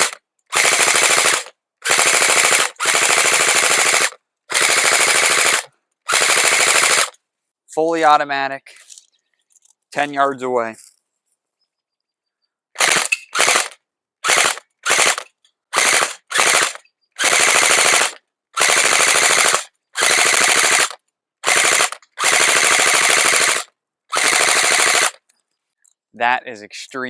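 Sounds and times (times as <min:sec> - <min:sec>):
airsoft rifle firing bursts: 0:00.0 - 0:07.2, 0:12.8 - 0:25.2.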